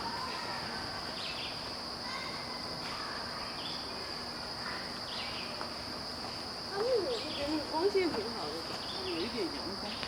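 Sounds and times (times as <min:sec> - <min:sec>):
insects trilling chorus: 0:00.0 - 0:10.0.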